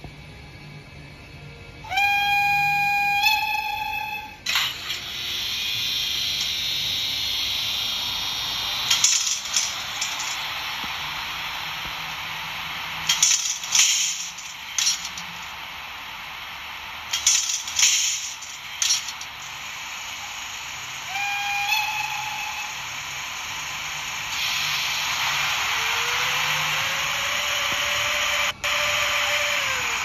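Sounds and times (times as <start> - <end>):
steady background hiss: 2.6 - 30.0
compressed air hisses: 6.7 - 30.0.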